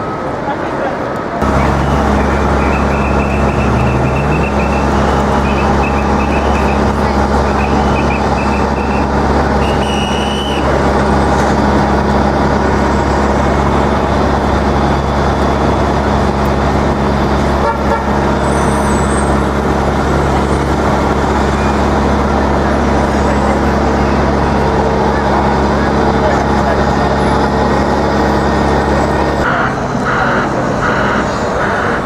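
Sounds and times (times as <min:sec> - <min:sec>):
low drone of engines and machinery: 0:00.0 - 0:32.0
short high beep: 0:01.4 - 0:10.7.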